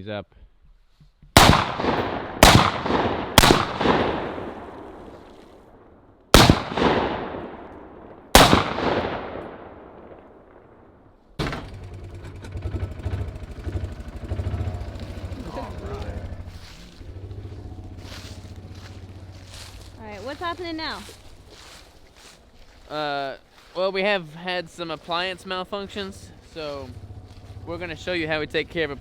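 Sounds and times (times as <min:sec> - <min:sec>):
shotgun blasts echoing: 0:01.4 - 0:11.0
engine running with buzzy rattle: 0:11.4 - 0:22.7, 0:25.4 - 0:29.0.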